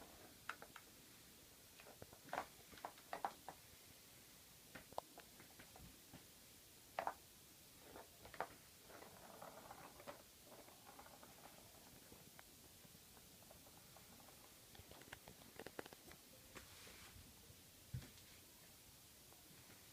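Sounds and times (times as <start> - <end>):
ball rattling around track: 7.8 - 16.0.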